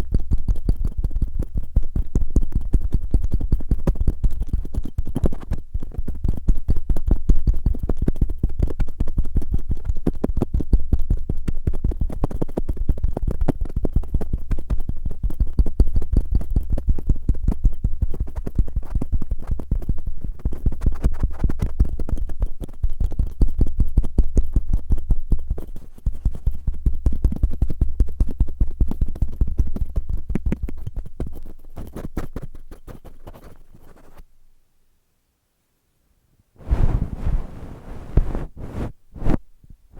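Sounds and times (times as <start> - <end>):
low rumble: 36.6 - 39.4
cotton swabs scratching microphone: 36.6 - 39.5.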